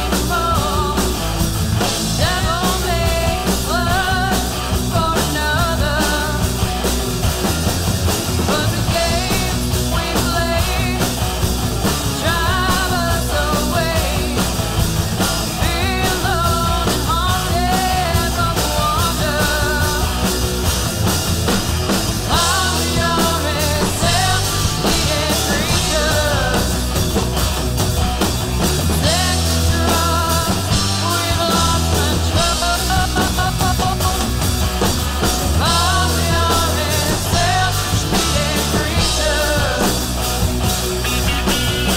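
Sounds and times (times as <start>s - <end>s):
woman singing: 0.0s - 1.2s, 2.1s - 6.5s, 8.4s - 11.2s, 12.2s - 14.5s, 15.6s - 20.2s, 22.3s - 26.8s, 29.0s - 34.2s, 35.6s - 40.1s
distorted electric guitars: 0.0s - 41.9s
drum kit: 0.0s - 41.9s.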